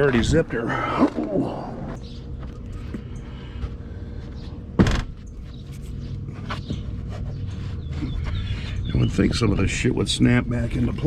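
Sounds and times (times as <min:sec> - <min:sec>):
steady low hum: 0:00.0 - 0:11.0
loud thump: 0:04.8 - 0:05.1.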